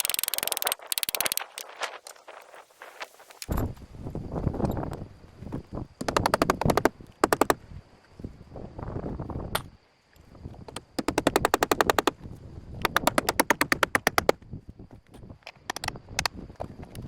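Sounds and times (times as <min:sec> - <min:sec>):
fast rattling clicks: 0:00.0 - 0:02.2, 0:06.0 - 0:07.6, 0:10.7 - 0:12.2, 0:12.8 - 0:14.4, 0:15.4 - 0:17.0.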